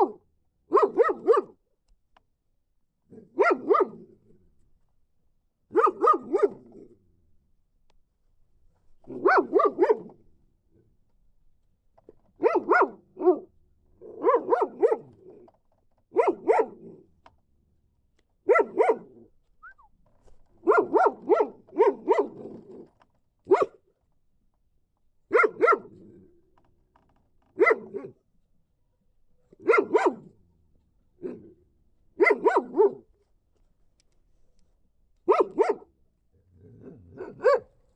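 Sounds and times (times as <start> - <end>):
dog barking: 0.0 - 1.6, 3.2 - 4.1, 5.7 - 6.8, 9.1 - 10.2, 12.4 - 15.4, 16.1 - 17.0, 18.4 - 19.9, 20.6 - 22.6, 23.5 - 23.8, 25.3 - 26.0, 27.6 - 28.2, 29.6 - 30.3, 31.2 - 31.6, 32.2 - 33.1, 35.3 - 35.9, 36.8 - 37.8.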